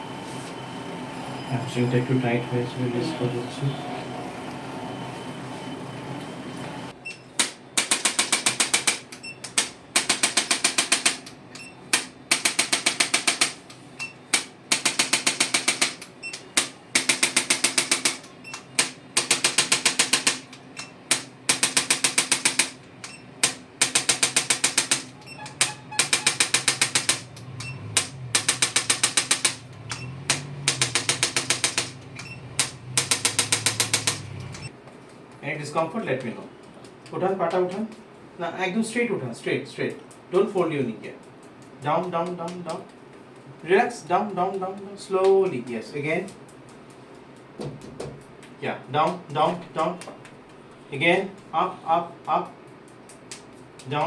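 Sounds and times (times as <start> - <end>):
percussion massager clicking: 7.4 - 34.7.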